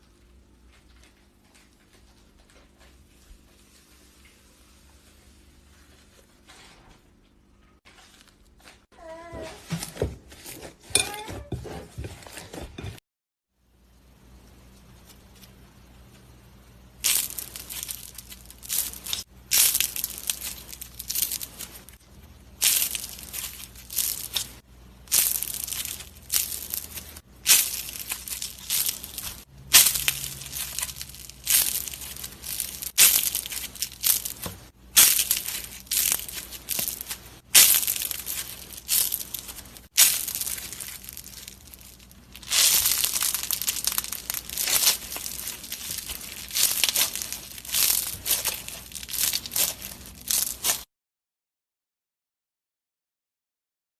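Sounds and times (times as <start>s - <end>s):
slime squelching and crackling: 17.0s - 50.9s.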